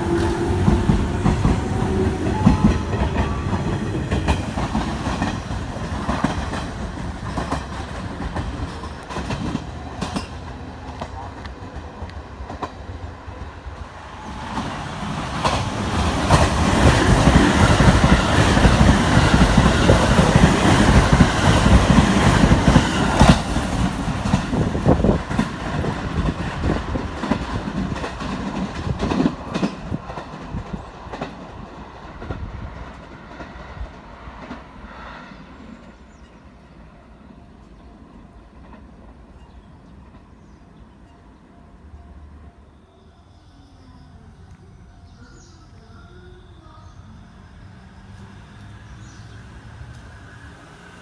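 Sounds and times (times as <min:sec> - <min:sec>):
train wheels clicking over rail joints: 0:00.0 - 0:13.0, 0:14.4 - 0:34.8
electric train running past: 0:00.0 - 0:51.0.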